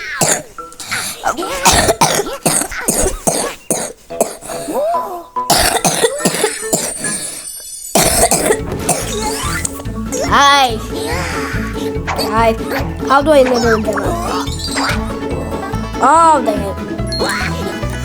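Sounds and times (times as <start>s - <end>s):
person coughing: 0.1s - 9.2s.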